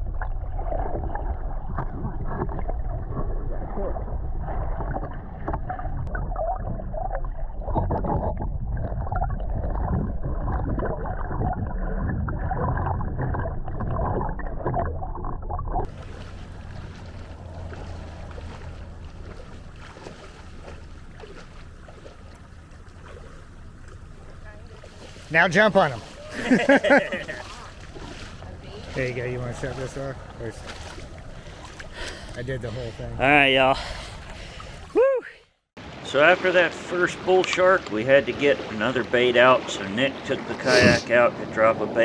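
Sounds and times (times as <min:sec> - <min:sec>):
muffled underwater sloshing: 0:00.0 - 0:35.0
wind: 0:00.0 - 0:42.0
wash of water: 0:15.9 - 0:35.1.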